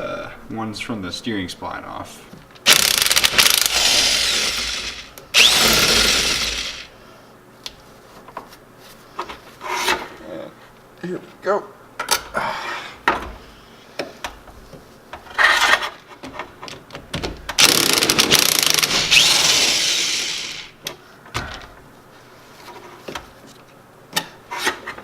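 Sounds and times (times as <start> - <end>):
loud steady hiss: 17.6 - 20.8.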